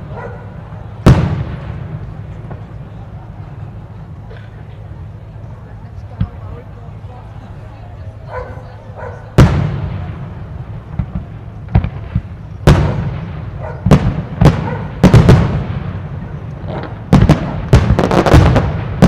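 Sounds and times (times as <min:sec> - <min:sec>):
firework shells booming: 0:01.0 - 0:02.8, 0:09.3 - 0:19.0.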